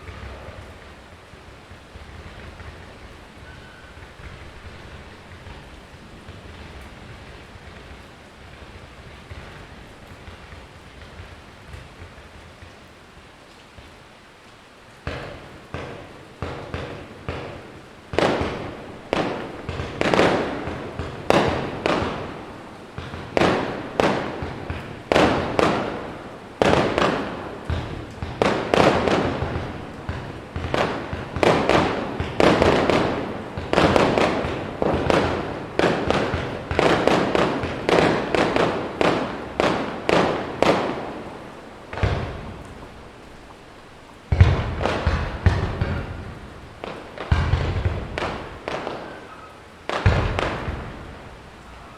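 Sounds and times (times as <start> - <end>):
fireworks bangs with echo: 0.0 - 12.6, 15.0 - 43.2, 44.2 - 51.9
deep firework boom: 44.3 - 46.3.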